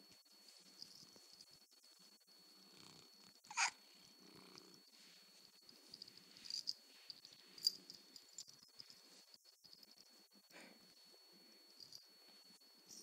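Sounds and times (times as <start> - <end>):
pet snoring softly: 2.5 - 5.0.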